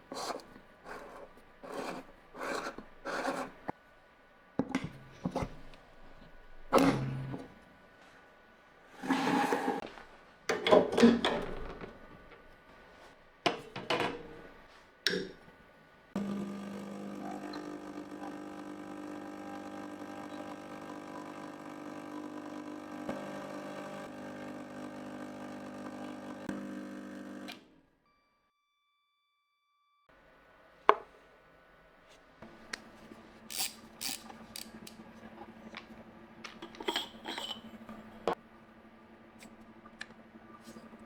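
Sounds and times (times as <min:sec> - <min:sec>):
espresso machine pump humming: 0:16.2 - 0:27.6, 0:33.5 - 0:36.0.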